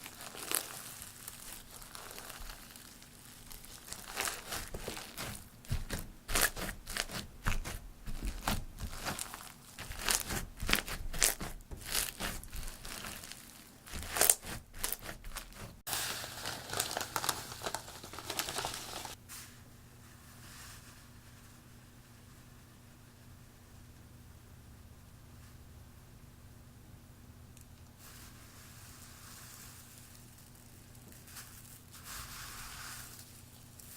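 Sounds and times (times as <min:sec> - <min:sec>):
crunchy slime crackling: 0:00.0 - 0:19.2.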